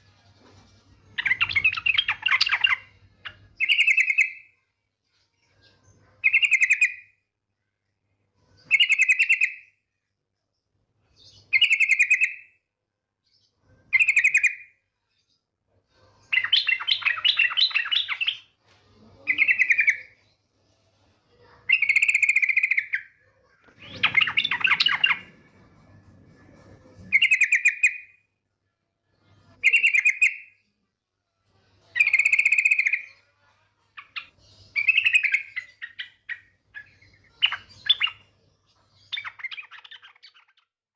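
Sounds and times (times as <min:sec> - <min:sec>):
bird chattering: 0:23.8 - 0:25.3.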